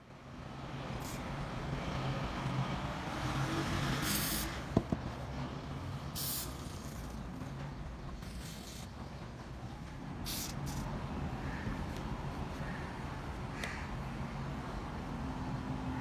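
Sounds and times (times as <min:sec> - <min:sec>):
hissing air bursts: 0:03.8 - 0:04.7, 0:06.1 - 0:07.2, 0:10.2 - 0:11.0.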